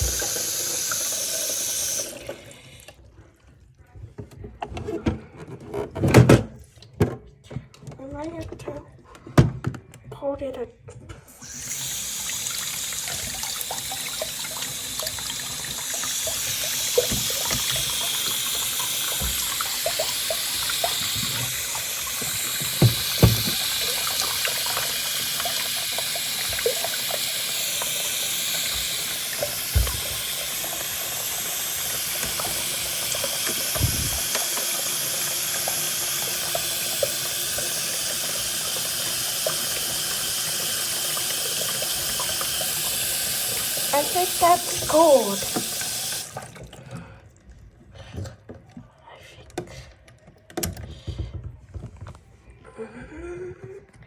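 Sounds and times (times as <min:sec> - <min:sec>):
running water: 0:00.0 - 0:03.6, 0:11.4 - 0:48.7.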